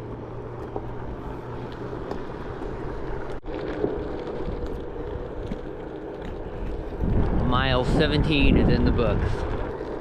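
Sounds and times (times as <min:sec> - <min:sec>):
wind on microphone: 0:04.2 - 0:10.0.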